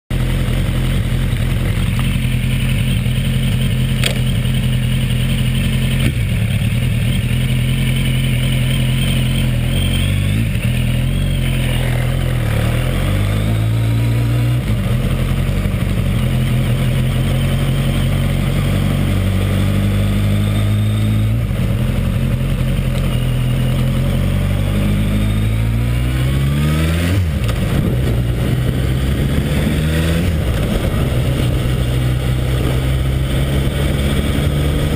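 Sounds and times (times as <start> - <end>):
motorcycle engine running: 0.1 - 34.9
slight engine noise: 0.4 - 26.3.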